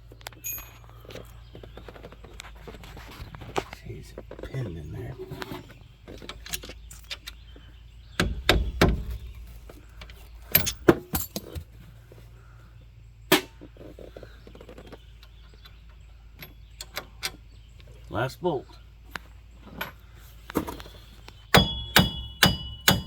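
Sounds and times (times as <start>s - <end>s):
metal tools clinking: 0.3s - 1.2s, 8.7s - 11.7s
heavy metal clunking: 8.0s - 11.8s, 21.5s - 23.0s.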